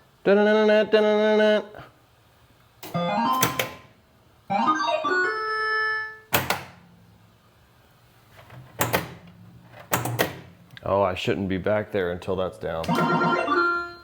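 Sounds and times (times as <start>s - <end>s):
pinball electronic tones: 2.9s - 3.9s, 4.5s - 6.3s, 12.9s - 14.0s.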